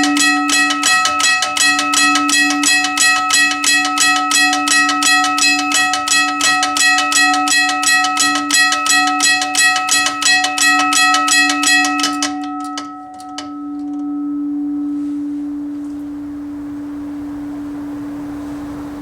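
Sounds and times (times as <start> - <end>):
railroad crossing bell ringing: 0.0 - 19.0
steady low hum: 13.5 - 19.0.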